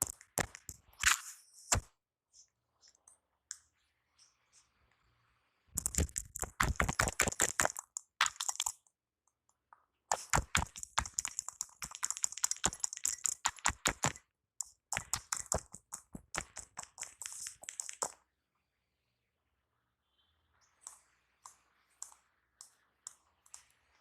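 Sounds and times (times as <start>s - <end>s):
rapid hand taps on head: 5.8s - 8.7s, 10.1s - 14.2s, 14.9s - 18.2s.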